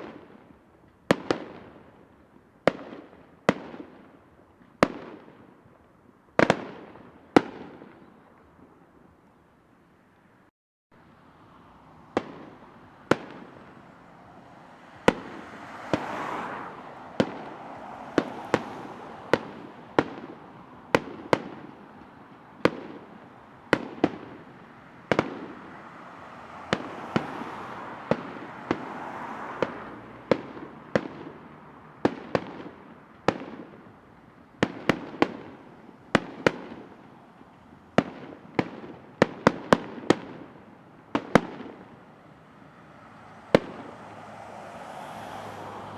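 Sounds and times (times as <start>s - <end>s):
fireworks bangs: 6.4s - 9.1s, 11.9s - 44.3s.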